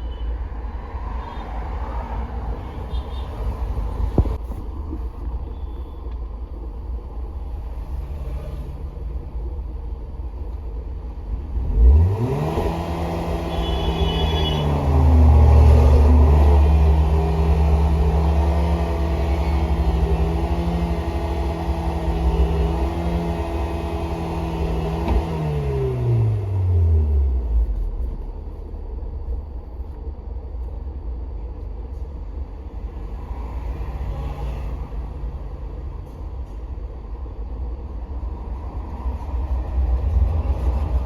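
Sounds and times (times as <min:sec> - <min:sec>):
misfiring car engine revving: 0:11.5 - 0:27.7.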